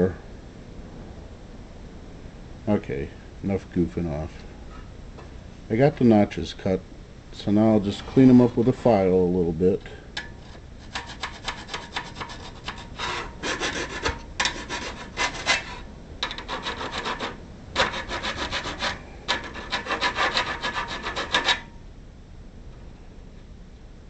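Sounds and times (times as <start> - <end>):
file scraping metal: 10.4 - 21.7.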